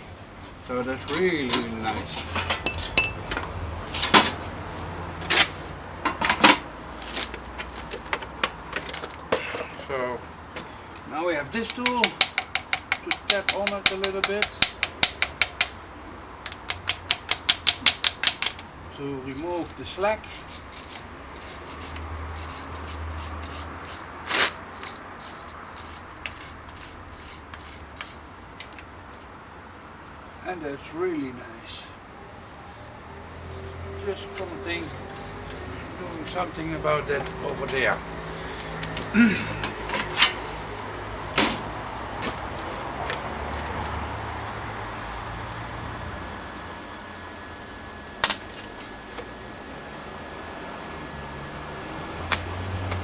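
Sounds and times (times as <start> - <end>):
sharp knocks: 11.6 - 15.8, 16.4 - 18.6
hand tool scraping slag off weld: 19.3 - 28.9, 41.3 - 42.8.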